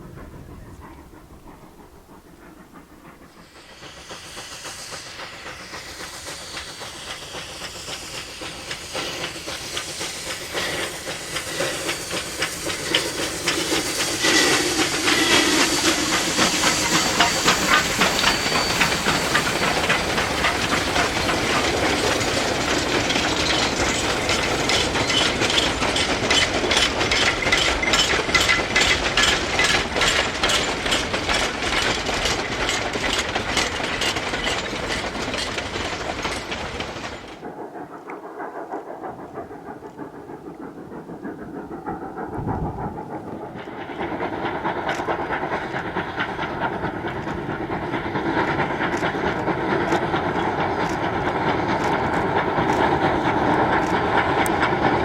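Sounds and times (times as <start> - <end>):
steam hissing: 0.0 - 55.0
steam locomotive passing: 0.0 - 55.0
clatter of wheels and rods: 5.6 - 37.5.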